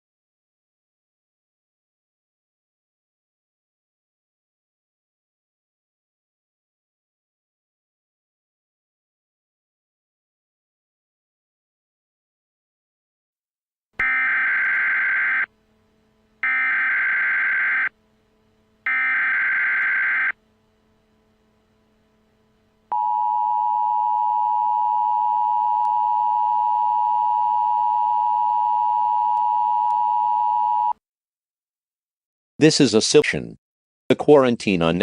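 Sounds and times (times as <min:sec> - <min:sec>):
harsh digital data bursts: 0:14.0 - 0:15.5, 0:16.4 - 0:17.9, 0:18.9 - 0:20.4
two-tone attention signal: 0:18.9 - 0:20.4, 0:22.9 - 0:31.0.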